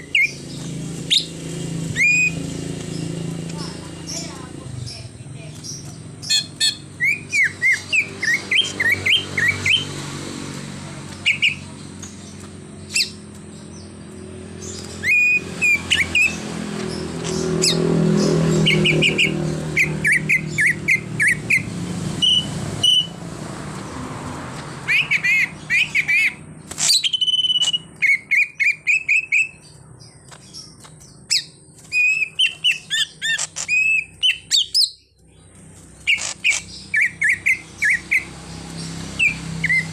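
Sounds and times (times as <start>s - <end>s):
bird singing whistled chirps: 2.0s - 2.4s, 5.8s - 9.9s, 14.8s - 16.4s, 18.6s - 23.2s, 24.9s - 29.7s, 31.3s - 35.0s.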